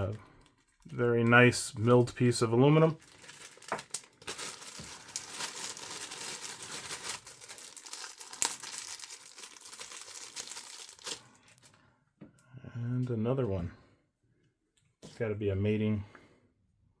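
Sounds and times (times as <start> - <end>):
packaging crinkling and rustling: 0.0 - 11.7.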